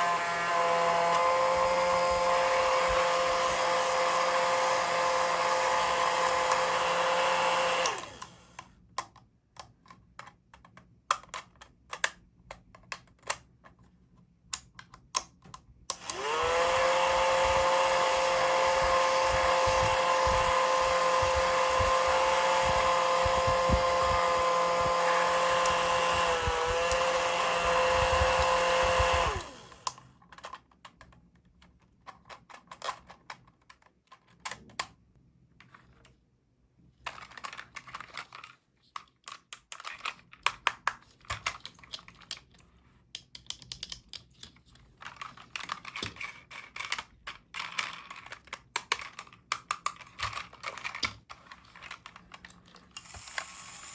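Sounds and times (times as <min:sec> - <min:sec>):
electric motor fan whining: 0:00.0 - 0:08.6, 0:15.9 - 0:30.0.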